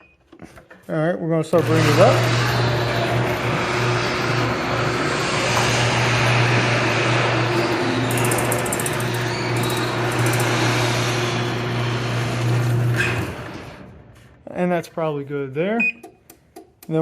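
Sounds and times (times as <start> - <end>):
garage door opener motor hum: 1.5 - 14.3.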